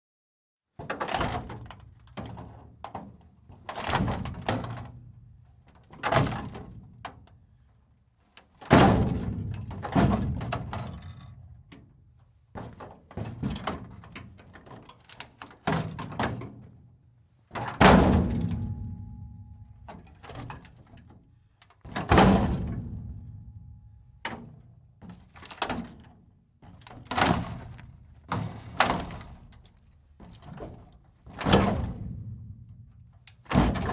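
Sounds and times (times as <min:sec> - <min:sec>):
heavy metal impacts: 0:18.0 - 0:20.6.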